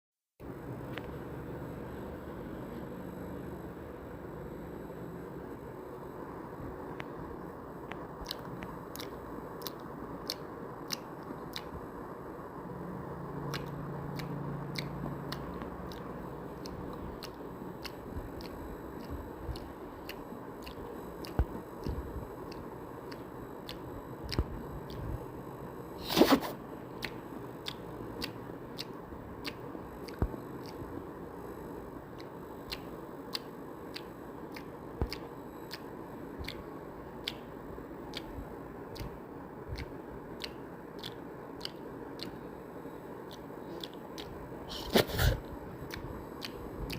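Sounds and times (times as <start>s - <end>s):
wet mouth clicks: 8.2s - 11.8s, 13.4s - 25.2s, 26.0s - 30.9s, 32.2s - 42.4s, 43.2s - 46.9s
chewing food: 8.2s - 11.9s, 13.4s - 25.2s, 26.0s - 30.9s, 32.2s - 42.4s, 43.2s - 46.9s.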